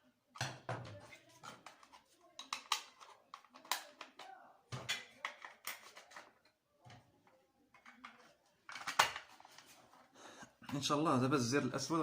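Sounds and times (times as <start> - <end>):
plastic clicks and knocks: 0.4 - 7.1.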